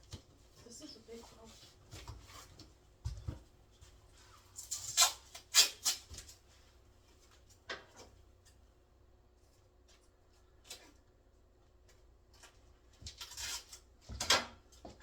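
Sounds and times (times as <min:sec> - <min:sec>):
adhesive tape ripping off roll: 0:04.6 - 0:06.1.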